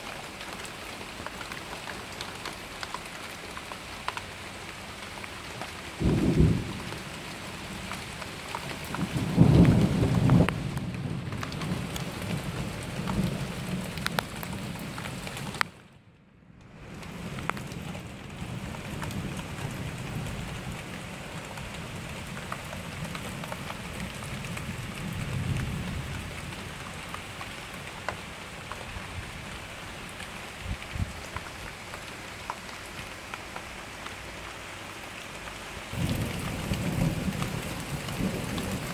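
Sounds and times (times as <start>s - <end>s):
steady rain falling: 0.0s - 38.9s
thunder rumbling: 6.0s - 15.8s, 16.7s - 26.9s, 35.9s - 38.9s.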